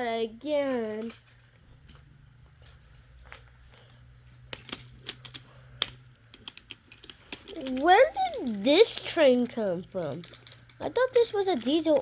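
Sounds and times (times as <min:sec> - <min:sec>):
faint steady hum: 0:00.0 - 0:12.0
wooden toy train clicks and knocks: 0:04.5 - 0:12.0.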